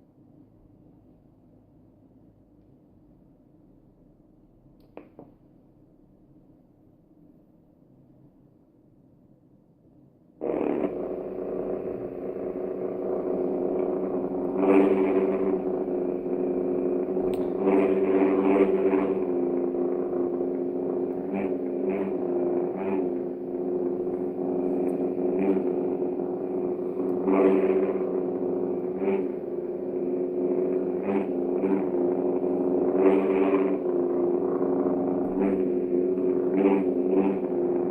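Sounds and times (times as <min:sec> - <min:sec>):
synthesised lightsaber hum: 0:10.4 - 0:37.9.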